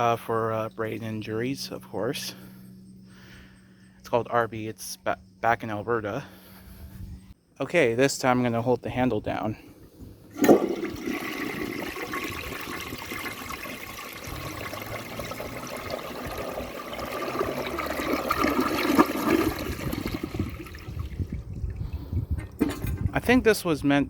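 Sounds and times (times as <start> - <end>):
toilet flushing: 10.3 - 23.1.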